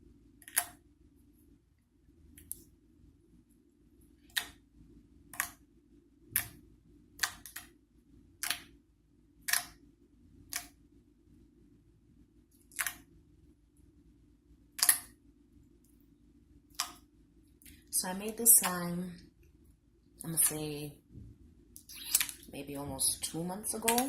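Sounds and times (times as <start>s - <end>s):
slime squeezed with clicky pops: 21.8s - 22.4s.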